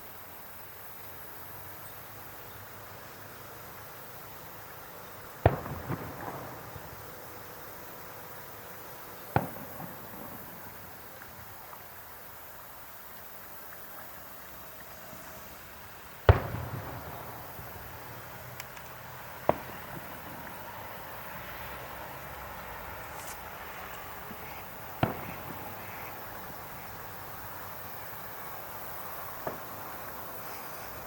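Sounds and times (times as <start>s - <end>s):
fireworks bangs: 4.9s - 11.6s, 15.1s - 31.0s.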